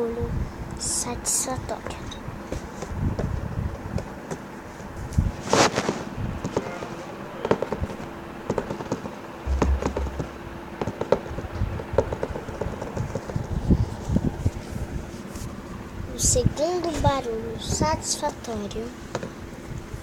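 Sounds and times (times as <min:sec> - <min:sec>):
faint steady hum: 0:06.2 - 0:20.0
short low rumble: 0:09.5 - 0:10.6.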